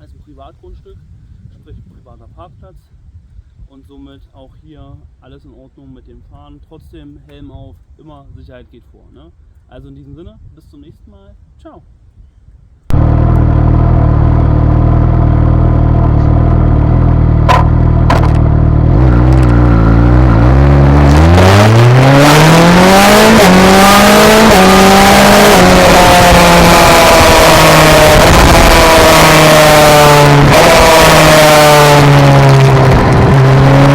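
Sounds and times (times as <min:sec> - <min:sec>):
wind noise on microphone: 0:00.0 - 0:33.9
motorcycle engine revving: 0:12.9 - 0:33.9.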